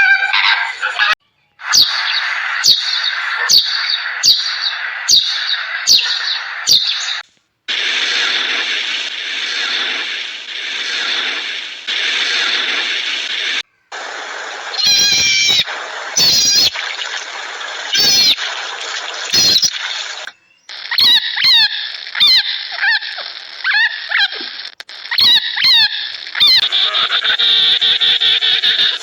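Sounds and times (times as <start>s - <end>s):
high-pitched animal calls: 0.0s - 7.2s, 14.7s - 29.0s
quick falling chirps: 14.7s - 22.5s.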